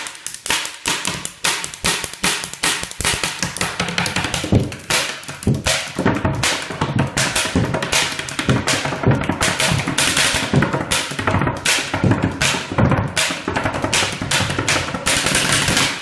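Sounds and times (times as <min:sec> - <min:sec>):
pens drumming on a surface: 0:00.0 - 0:16.0.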